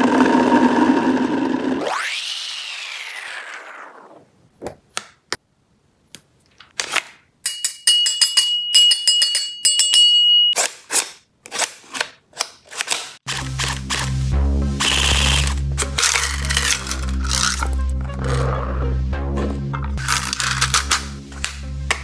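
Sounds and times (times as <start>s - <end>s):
high electronic tone: 13.7s - 20.4s.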